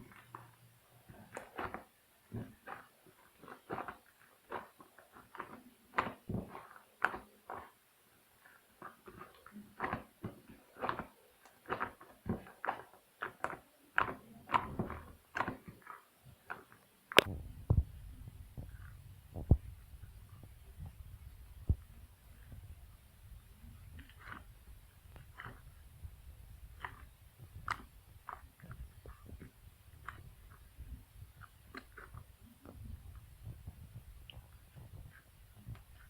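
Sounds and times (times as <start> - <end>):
slime clicking and squelching: 0.0 - 7.8, 8.4 - 36.0
low rumble: 17.3 - 23.7.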